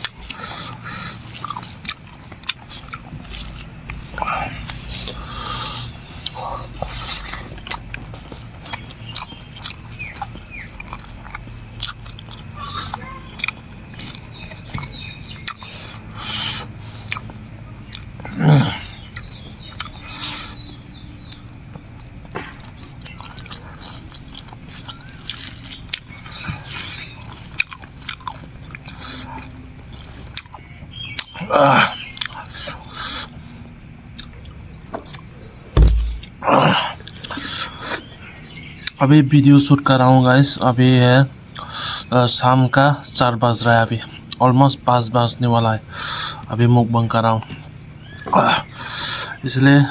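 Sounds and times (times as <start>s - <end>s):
person chewing food: 0.0s - 33.4s, 34.0s - 39.0s
low thump: 35.8s - 36.4s.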